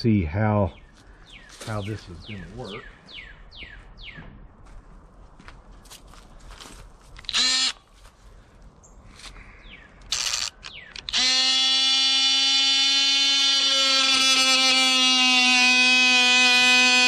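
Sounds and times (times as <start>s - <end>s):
oscillating multi-tool buzzing: 7.2s - 7.8s, 10.1s - 17.0s.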